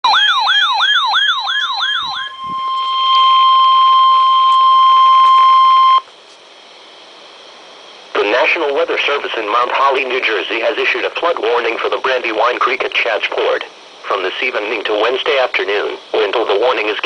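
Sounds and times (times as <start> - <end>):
steady warning alarm tone: 0.0 - 6.1
warbling siren: 0.0 - 6.1
faint radio hiss: 2.4 - 17.0.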